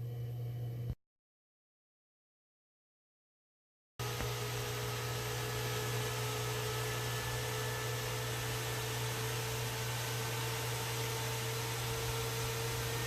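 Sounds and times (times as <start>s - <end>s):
faint hum: 0.0s - 1.0s
computer fan whirring: 4.0s - 13.0s.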